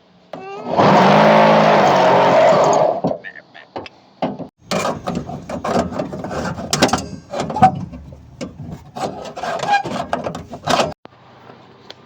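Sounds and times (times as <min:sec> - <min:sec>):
scraping and knocking on metal: 0:04.2 - 0:11.0.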